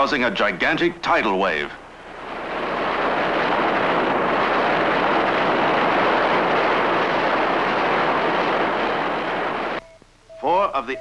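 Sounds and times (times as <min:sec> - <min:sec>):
ocean wave crashing: 0:01.9 - 0:09.8.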